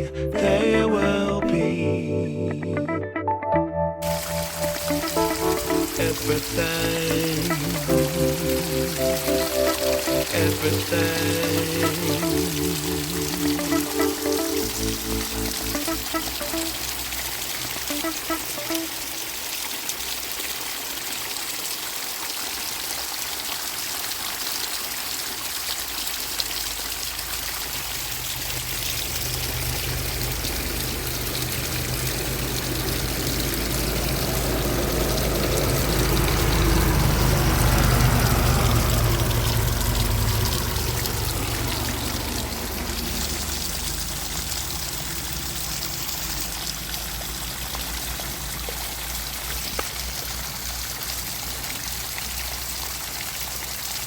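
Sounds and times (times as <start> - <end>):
flowing water: 4.0 - 54.0
vehicle engine passing: 4.1 - 16.9, 28.5 - 45.3.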